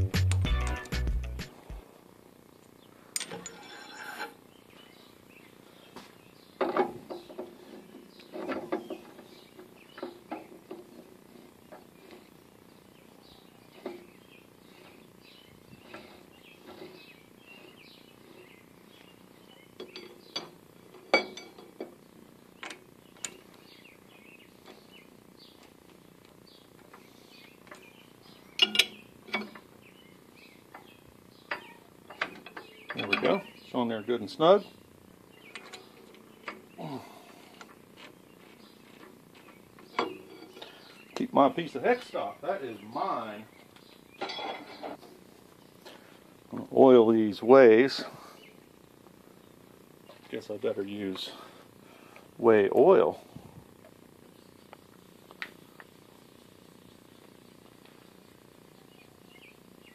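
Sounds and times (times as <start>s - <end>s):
sharp metal clanks: 28.6s - 29.6s.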